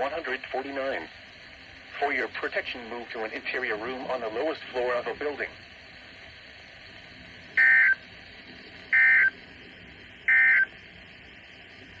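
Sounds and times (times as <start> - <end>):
faint radio hiss: 0.0 - 12.0
digital data tone chirps: 7.6 - 8.0, 8.9 - 9.3, 10.3 - 10.7.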